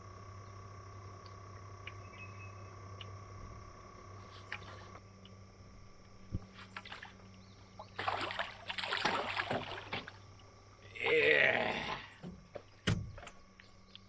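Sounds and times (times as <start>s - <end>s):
steady low hum: 0.0s - 14.0s
water splashing against boat: 6.3s - 10.5s, 11.9s - 14.0s.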